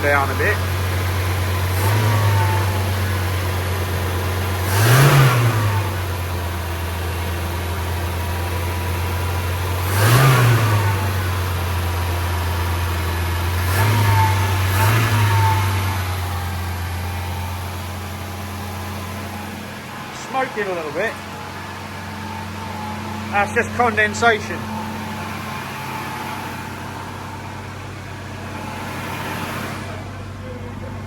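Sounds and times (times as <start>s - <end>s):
car engine idling fast: 0.0s - 31.0s
engine revving: 0.0s - 31.0s.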